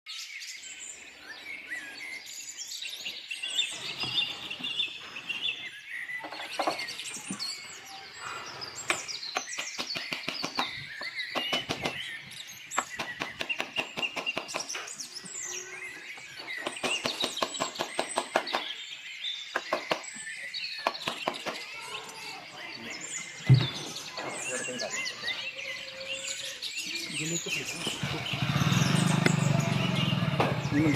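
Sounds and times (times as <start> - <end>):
birds chirping and calling: 0.1 - 30.9
rapid sharp bird ticks: 8.9 - 12.1, 12.7 - 14.9, 16.6 - 18.7.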